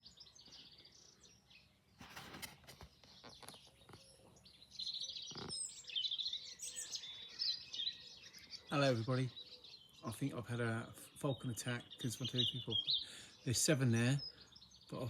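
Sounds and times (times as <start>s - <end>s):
songbirds chirping: 0.0s - 15.0s
brief clicks and rustles: 2.0s - 4.0s.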